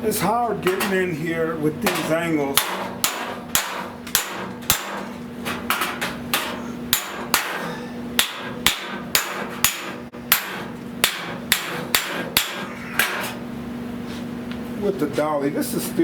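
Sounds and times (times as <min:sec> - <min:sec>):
hammer striking steel panel: 0:00.6 - 0:01.1, 0:01.8 - 0:13.4.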